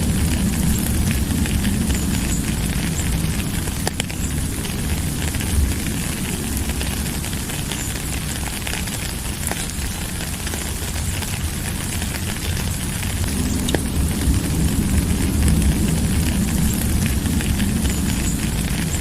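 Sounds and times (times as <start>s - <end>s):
constant low rumble: 0.0s - 19.0s
steady rainfall: 0.0s - 19.0s.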